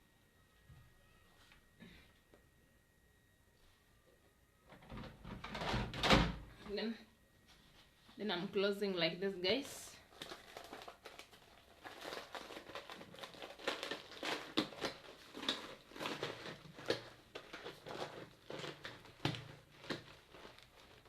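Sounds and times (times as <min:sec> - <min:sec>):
snack packet crinkling: 0:10.1 - 0:21.0.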